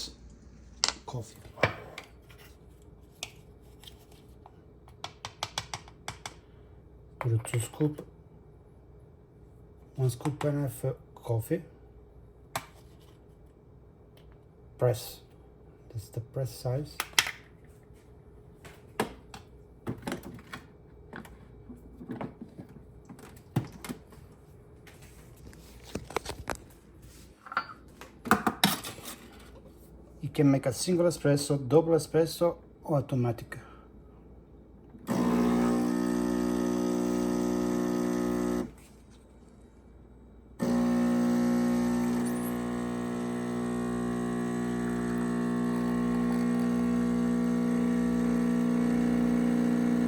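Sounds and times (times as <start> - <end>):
espresso machine pump humming: 35.1 - 38.8, 40.6 - 50.0.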